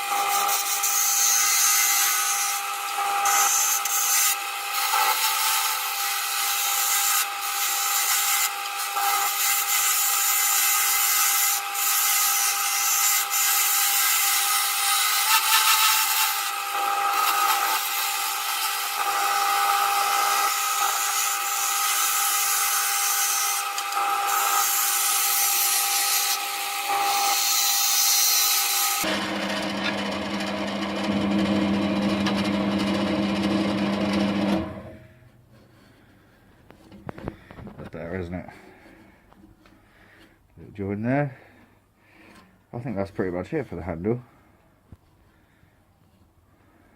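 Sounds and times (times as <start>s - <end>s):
tool scraping spinning wood: 0.0s - 36.1s
lathe motor whine: 16.4s - 34.9s.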